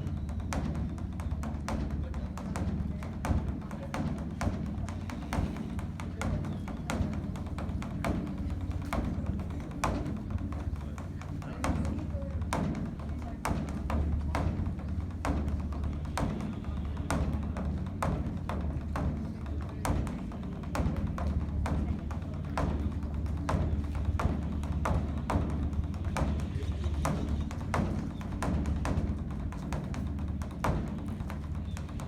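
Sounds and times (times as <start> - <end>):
deep drum booming: 0.0 - 32.0.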